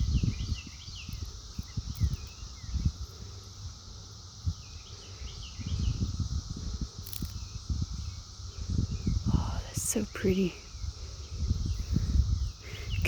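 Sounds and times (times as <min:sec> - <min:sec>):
insect chorus buzzing: 0:00.0 - 0:13.0
wind buffeting microphone: 0:00.0 - 0:13.0.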